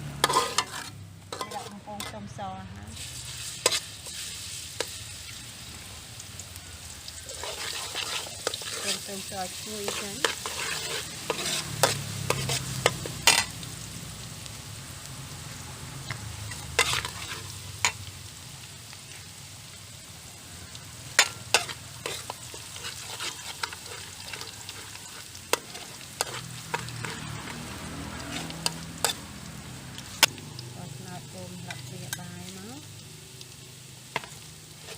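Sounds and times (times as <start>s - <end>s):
garlic sizzling in oil: 0.0s - 34.9s
spatula knocking and scraping pan: 0.2s - 2.3s, 9.8s - 13.5s.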